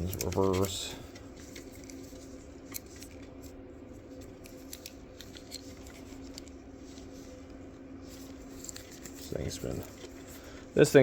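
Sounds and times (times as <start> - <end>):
hands clicking and scraping wiring: 0.0 - 3.6, 4.2 - 6.6
steady low hum: 0.0 - 11.0.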